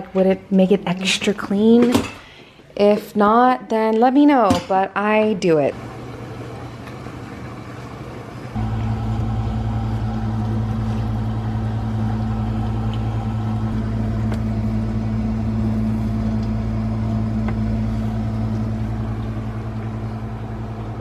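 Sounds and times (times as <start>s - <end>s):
dishwasher pump motor humming: 5.8s - 21.0s.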